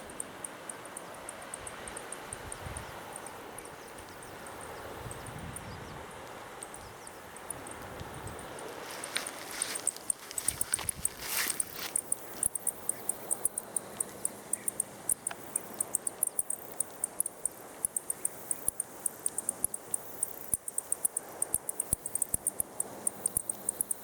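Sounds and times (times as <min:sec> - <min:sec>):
crickets chirping: 0:00.0 - 0:24.0
faint clicks: 0:07.4 - 0:24.0.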